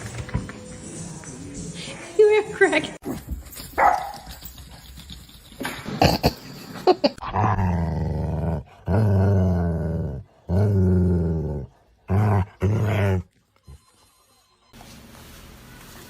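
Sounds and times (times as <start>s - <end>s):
dog growling: 7.2s - 13.4s.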